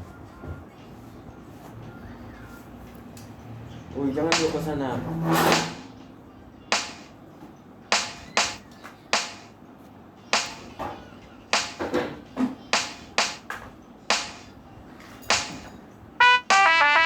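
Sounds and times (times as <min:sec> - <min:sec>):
sharp impacts: 0:04.3 - 0:04.7, 0:05.4 - 0:06.0, 0:06.7 - 0:07.1, 0:07.9 - 0:09.5, 0:14.1 - 0:14.6, 0:15.3 - 0:17.0.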